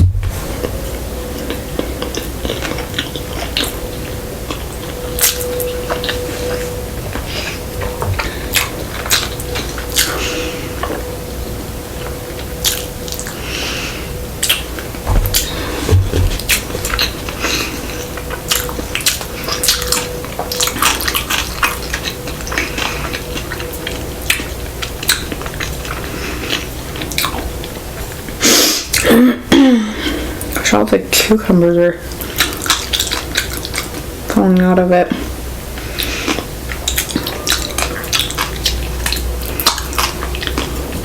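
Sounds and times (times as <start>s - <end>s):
wet chewing mouth clicks: 1.4s - 11.0s, 14.4s - 29.2s, 32.1s - 34.1s, 35.8s - 41.0s.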